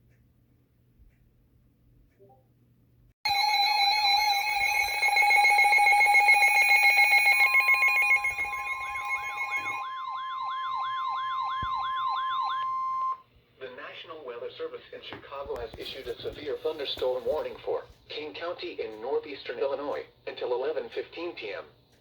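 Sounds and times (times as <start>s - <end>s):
steady single-pitch alarm tone: 3.2s - 13.2s
loud buzzing alarm: 3.3s - 13.2s
yelping siren: 3.3s - 13.2s.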